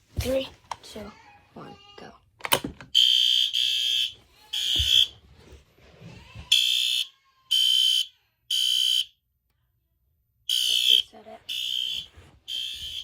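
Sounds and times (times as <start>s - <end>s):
fire alarm horn blasts: 3.0s - 5.1s, 6.5s - 9.2s, 10.5s - 13.0s.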